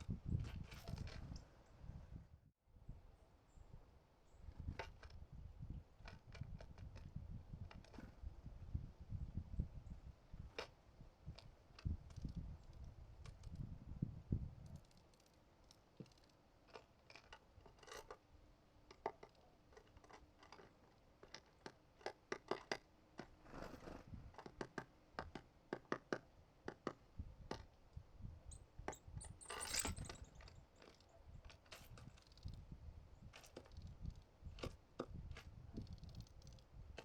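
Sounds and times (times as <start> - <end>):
rustle: 0.0 - 2.0, 14.7 - 24.5, 28.8 - 37.0
birds pecking seeds: 28.9 - 32.6, 33.2 - 36.7.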